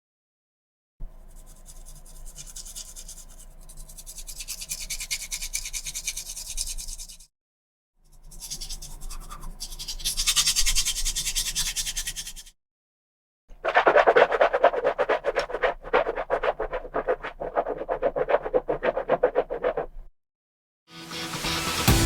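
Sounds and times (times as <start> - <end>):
toothbrush scrubbing teeth: 1.2 - 7.3, 8.1 - 12.5, 13.6 - 19.9.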